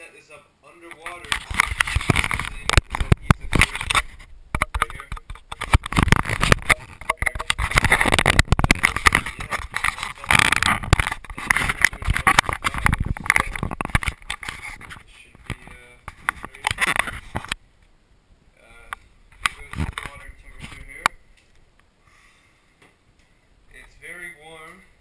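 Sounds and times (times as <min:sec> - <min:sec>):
knocks and scrapes: 0:01.0 - 0:17.6.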